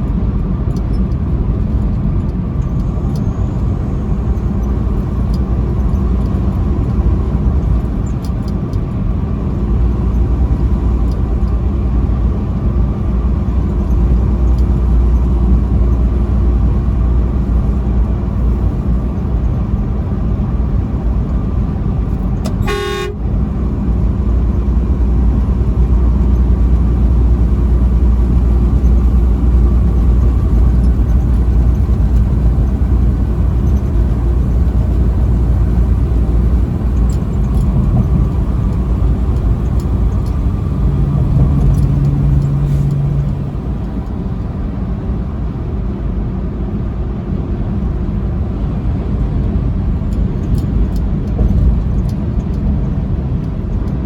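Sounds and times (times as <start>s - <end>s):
truck engine and road rumble: 0.0s - 54.0s
truck horn blast: 22.5s - 23.4s.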